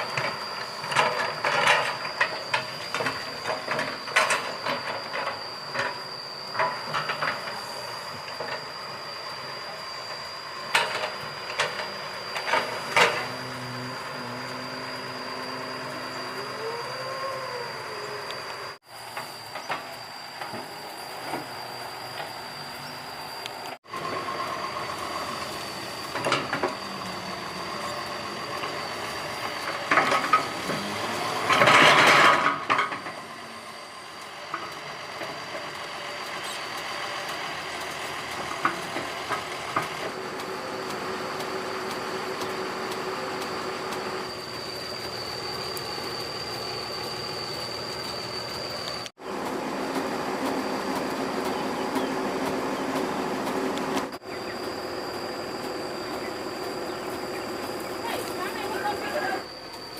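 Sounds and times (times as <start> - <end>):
faint high whine: 0.0 - 39.4, 40.1 - 52.4, 53.1 - 59.9
excavator diesel engine running: 0.0 - 59.9.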